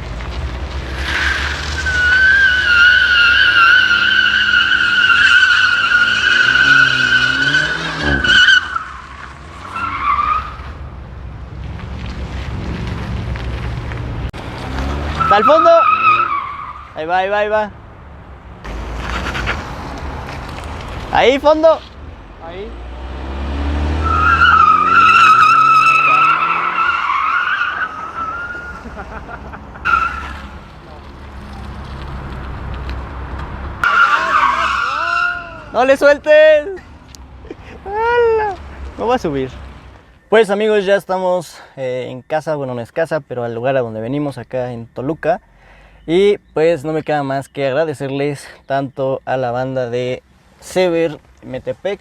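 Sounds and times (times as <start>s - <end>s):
car engine revving: 0.0s - 17.0s, 17.7s - 36.4s
car tyres squealing: 0.0s - 41.2s.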